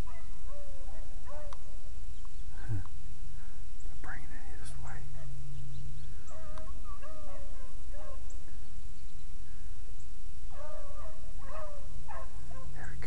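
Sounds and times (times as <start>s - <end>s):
distant hounds baying: 0.0s - 1.8s, 6.1s - 8.6s, 10.4s - 12.9s.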